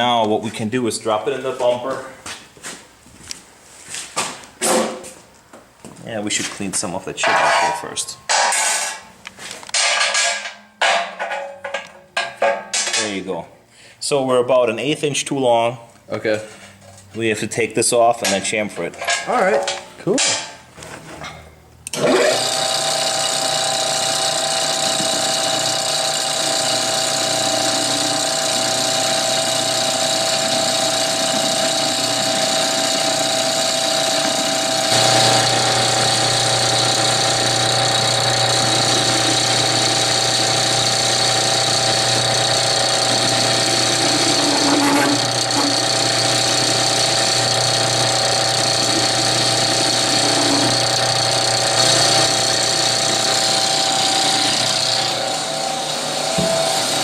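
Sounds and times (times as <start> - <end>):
metal lathe running with whine: 21.9 - 57.0.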